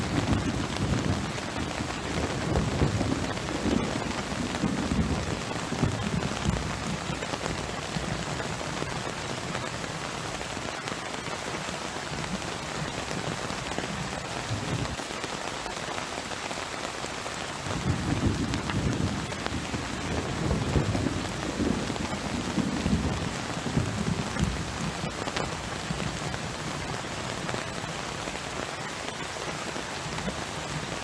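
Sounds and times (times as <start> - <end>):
heavy rain pattering: 0.0 - 31.0.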